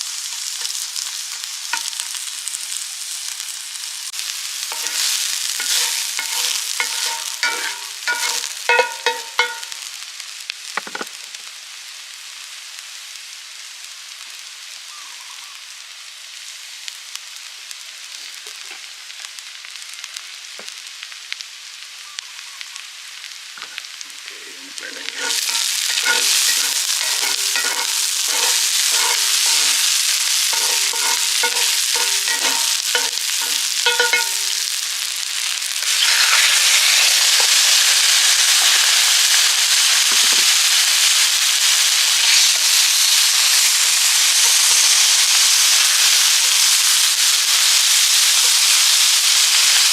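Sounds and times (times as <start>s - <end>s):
food sizzling in a pan: 0.0s - 49.9s
utensil clinking against pan: 4.7s - 9.7s, 24.8s - 34.6s.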